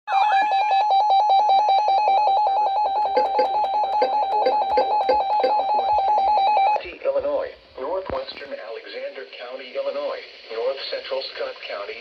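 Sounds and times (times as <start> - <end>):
slower beep: 1.8 - 6.8
higher alternating tones: 2.2 - 6.5
rapidly pulsing alert beep: 2.2 - 6.8.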